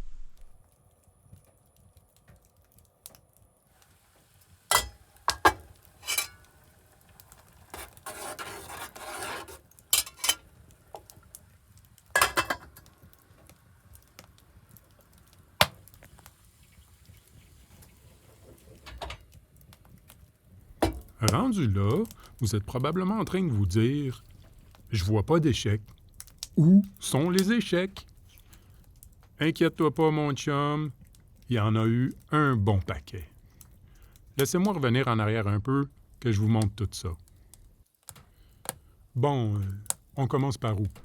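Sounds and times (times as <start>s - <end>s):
dishes and cutlery clinking: 4.7s - 6.5s, 10.0s - 10.4s, 12.2s - 12.9s
dishes scraping: 4.7s - 6.5s, 7.7s - 10.5s, 12.2s - 12.8s.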